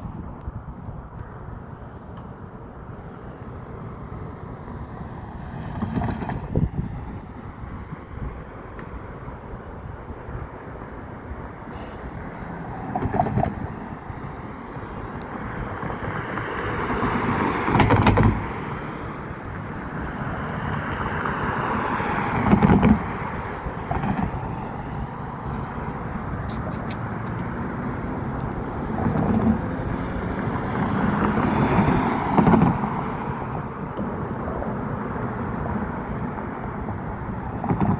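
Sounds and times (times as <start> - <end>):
background traffic: 0.0 - 37.9
cars passing: 0.0 - 37.9.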